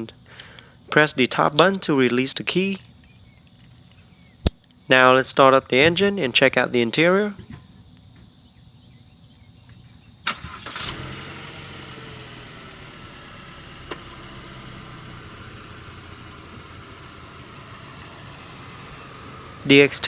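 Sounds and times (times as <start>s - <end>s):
car engine starting and idling: 10.2s - 20.0s.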